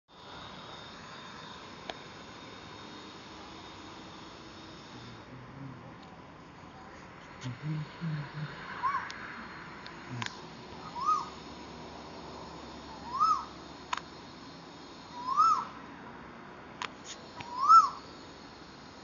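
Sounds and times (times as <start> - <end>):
koel calling: 8.2 - 9.2, 10.8 - 11.4, 12.9 - 13.6, 15.2 - 15.8, 17.4 - 18.0.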